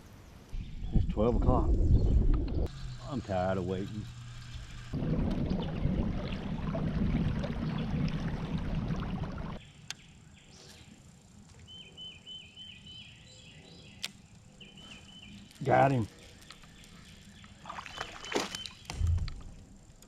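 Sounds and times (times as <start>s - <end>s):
open-air ambience: 0.0s - 20.0s
loud rough rumbling: 4.6s - 9.6s
bird chirping: 11.6s - 19.5s.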